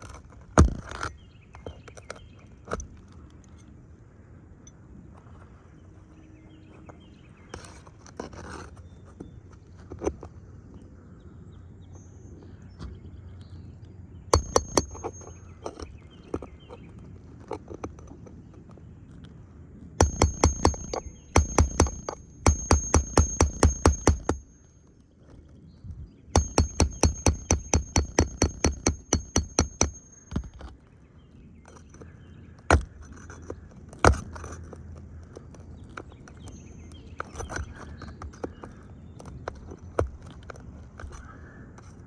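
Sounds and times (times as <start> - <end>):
nails driven into shingles: 0.0 - 3.1, 14.3 - 18.3, 20.0 - 25.4, 26.3 - 30.9, 31.6 - 42.0
scraping and tapping: 6.8 - 10.3, 14.4 - 18.8, 20.0 - 24.5, 31.6 - 42.0
loud knocks: 20.0 - 24.4, 26.4 - 30.7.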